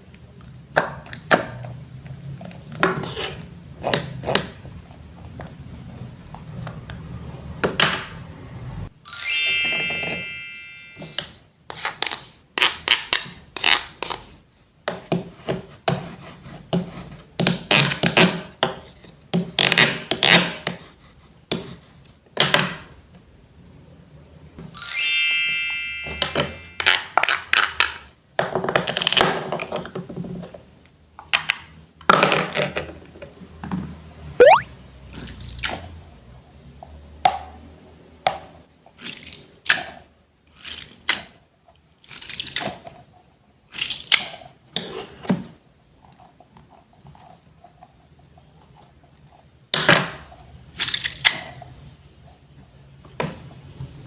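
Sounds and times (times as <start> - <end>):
bright chime: 9.1 - 11.2, 24.8 - 26.9.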